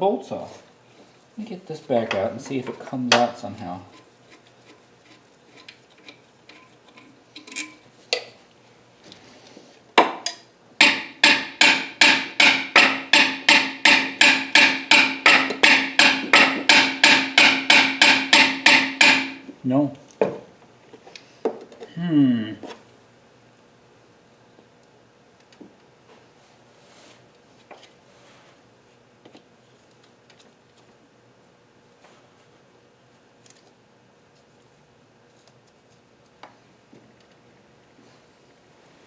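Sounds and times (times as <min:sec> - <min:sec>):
hammer blows on metal: 0:10.8 - 0:19.5.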